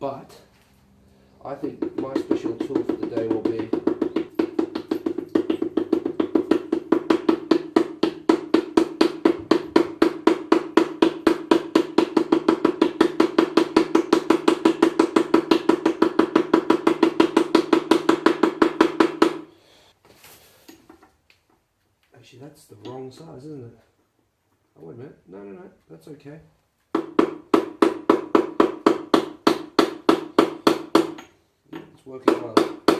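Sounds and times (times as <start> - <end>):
fast even drum beat: 1.7 - 10.4.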